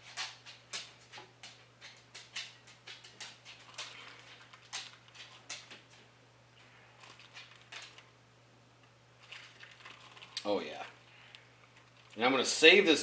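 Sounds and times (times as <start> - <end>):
hot oil crackling and spitting: 9.1 - 12.7.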